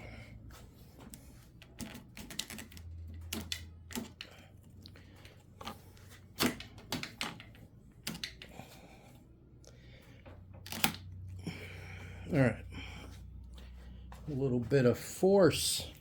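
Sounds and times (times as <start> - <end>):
plastic handle pieces clicking: 1.1 - 4.4, 5.2 - 8.6, 10.6 - 11.1.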